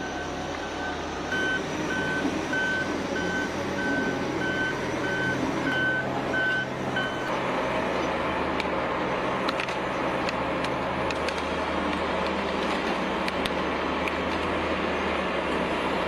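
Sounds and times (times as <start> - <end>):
reversing alarm beeping: 0.0 - 7.3
diesel engine running: 0.0 - 16.0.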